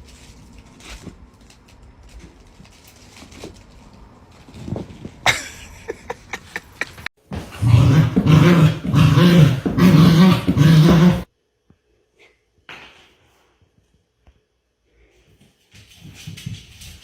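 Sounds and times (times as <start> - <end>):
dog growling: 7.4 - 11.3.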